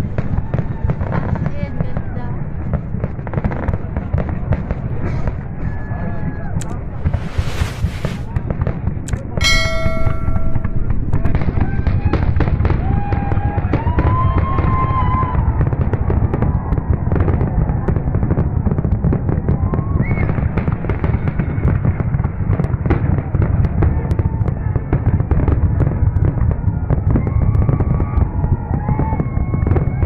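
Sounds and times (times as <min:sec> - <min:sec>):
fireworks bangs and crackles: 0:00.0 - 0:30.0
low rumble: 0:06.6 - 0:08.4.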